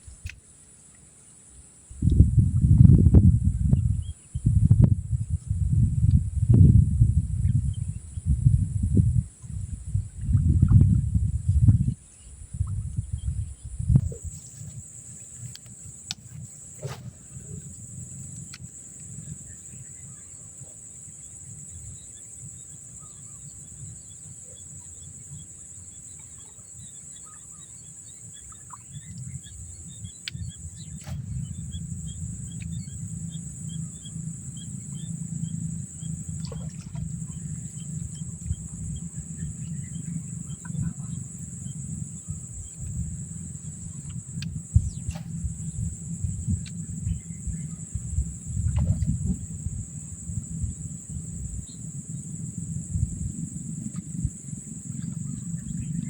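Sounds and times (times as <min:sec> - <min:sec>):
high insect drone: 0:00.0 - 0:56.0
low rumbling noise: 0:02.0 - 0:24.2, 0:28.6 - 0:56.0
faint bird chirps: 0:11.9 - 0:44.1.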